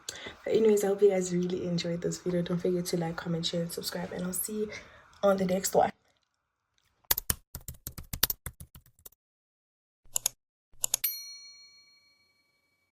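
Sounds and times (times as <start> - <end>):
keyboard typing clicks: 7.1 - 9.1, 10.1 - 11.1
bell ding: 11.0 - 12.9.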